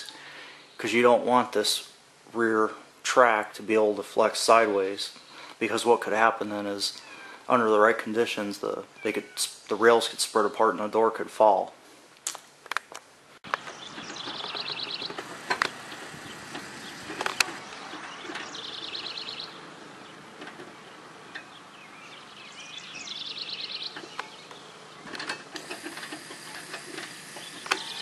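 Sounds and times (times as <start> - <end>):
steady background hiss: 0.0 - 28.0
songbird trilling: 13.5 - 25.1, 27.4 - 28.0.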